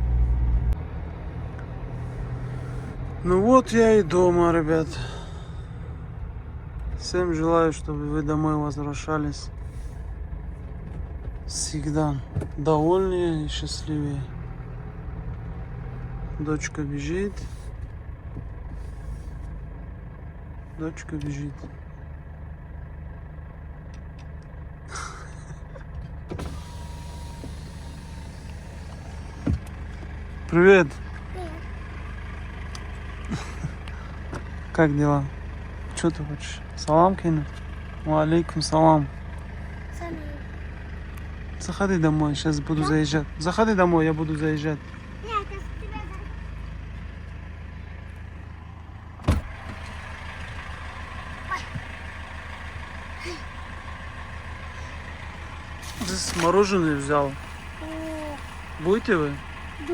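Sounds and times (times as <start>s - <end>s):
van engine idling: 0.0s - 59.9s
electric window motor whine: 26.3s - 30.2s
outside hiss: 26.4s - 29.9s.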